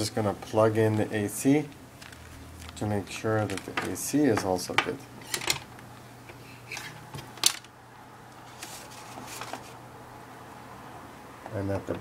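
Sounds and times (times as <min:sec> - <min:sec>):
handling clicks and taps: 0:03.4 - 0:05.6.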